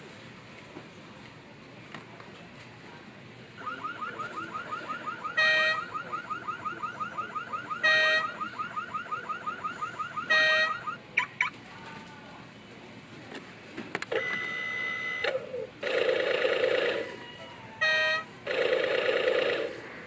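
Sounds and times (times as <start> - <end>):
alarm clock steady beep: 3.6 - 11.0, 14.1 - 15.4
alarm clock warbling chirp: 3.6 - 11.4.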